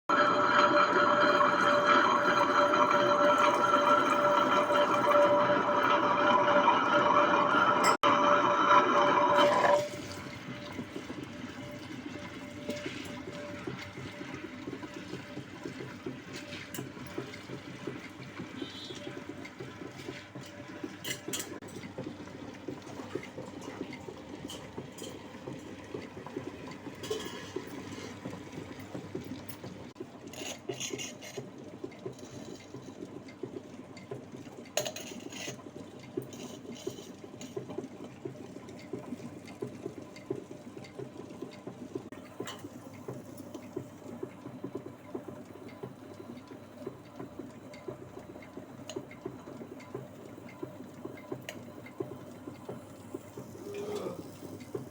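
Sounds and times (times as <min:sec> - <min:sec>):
wet grinder churning: 0:00.1 - 0:34.4.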